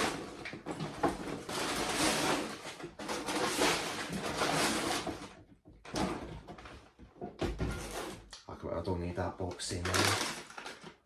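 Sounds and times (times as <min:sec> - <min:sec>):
plastic bags rustling: 0:00.0 - 0:05.3, 0:09.5 - 0:11.0.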